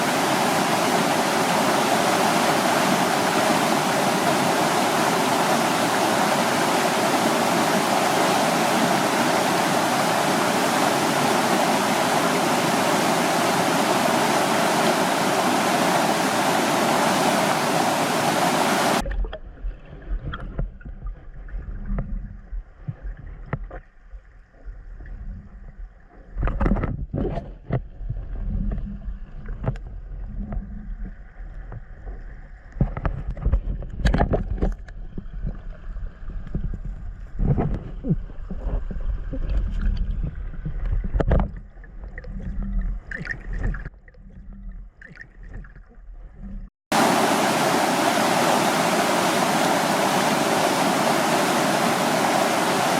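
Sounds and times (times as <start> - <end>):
stream rushing over waterfall: 0.0 - 19.0, 46.9 - 52.9.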